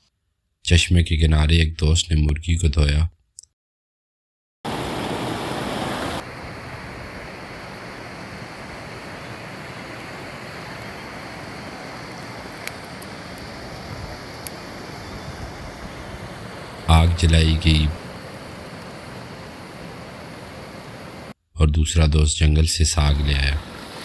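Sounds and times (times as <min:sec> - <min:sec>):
stream water rushing over rocks: 0:04.7 - 0:21.3
faint ticks: 0:12.1 - 0:13.5.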